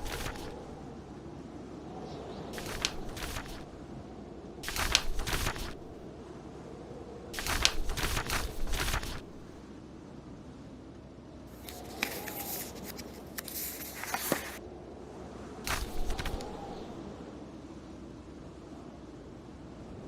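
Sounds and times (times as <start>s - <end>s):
book pages rustling: 0.0s - 0.6s, 2.6s - 3.7s, 4.6s - 6.0s, 7.4s - 9.6s, 11.6s - 14.6s, 15.7s - 16.8s
blizzard wind: 0.0s - 20.0s
fire: 0.0s - 20.0s.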